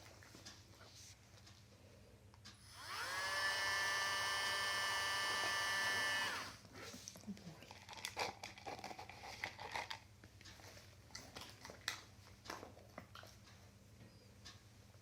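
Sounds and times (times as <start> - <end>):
dog chewing a treat: 7.1 - 13.5.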